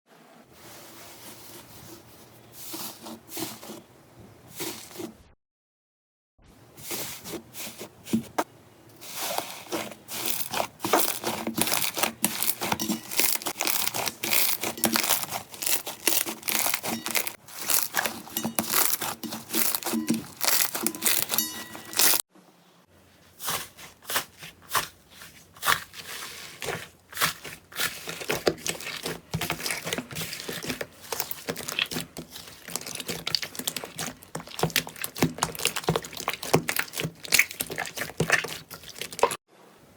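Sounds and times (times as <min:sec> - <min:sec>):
slime crackling and popping: 0:10.1 - 0:22.2, 0:27.2 - 0:39.4.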